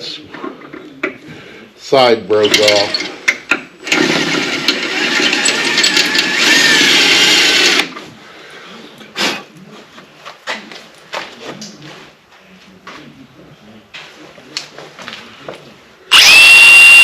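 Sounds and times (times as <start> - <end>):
power drill drilling into steel: 3.8 - 7.9, 16.1 - 17.0.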